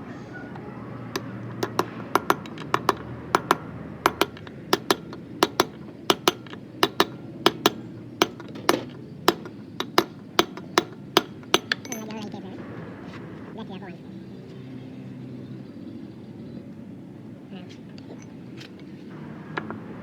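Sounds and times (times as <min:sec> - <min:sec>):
hammer tapping metal: 0:01.2 - 0:12.4.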